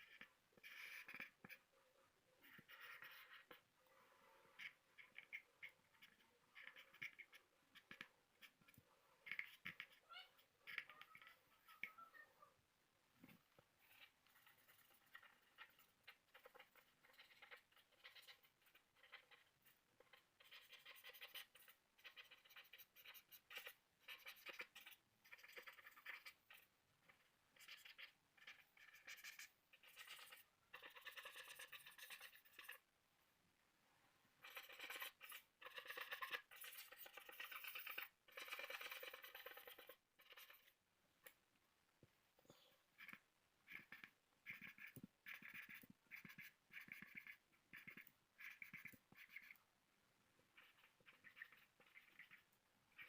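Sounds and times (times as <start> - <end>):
pencil scratching on paper: 0.0 - 1.7, 2.4 - 3.7, 4.6 - 8.7, 13.8 - 32.8, 34.4 - 40.8, 43.0 - 49.6.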